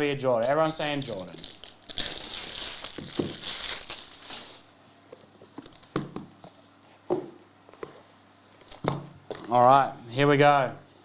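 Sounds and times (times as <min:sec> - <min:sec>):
packaging crinkling: 0:00.4 - 0:04.7.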